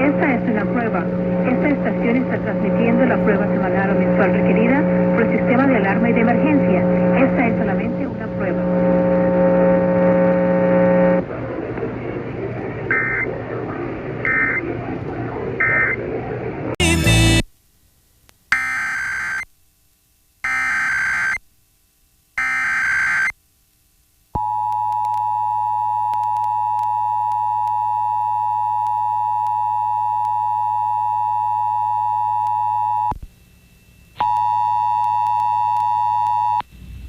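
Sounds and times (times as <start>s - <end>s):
data tone bursts: 12.9s - 13.3s.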